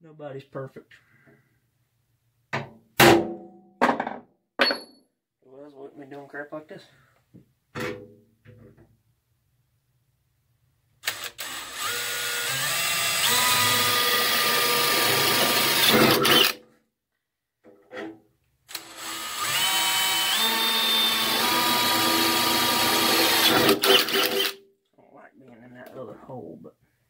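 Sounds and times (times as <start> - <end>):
electric drill drilling sheet steel: 11.0 - 16.6, 18.7 - 24.6.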